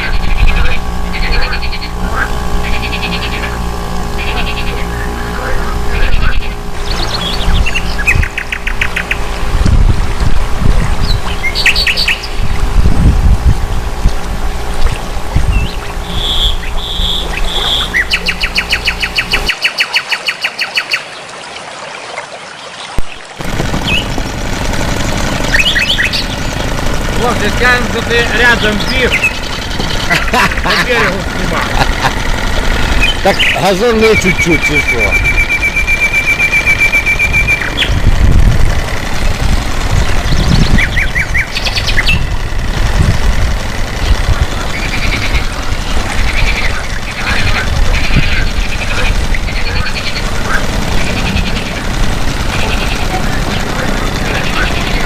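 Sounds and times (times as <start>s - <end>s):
bird trilling and chirping: 0.0s - 9.4s, 11.0s - 12.5s, 14.9s - 21.1s, 23.8s - 24.4s, 25.4s - 26.6s, 27.2s - 38.1s, 40.0s - 42.4s
low rumble: 0.0s - 19.5s, 35.1s - 55.0s.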